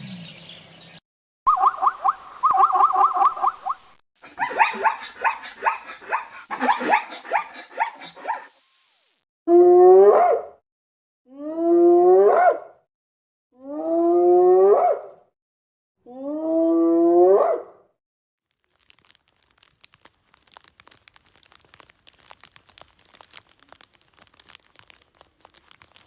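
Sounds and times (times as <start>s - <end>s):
animal yelping calls: 4.2s - 8.6s.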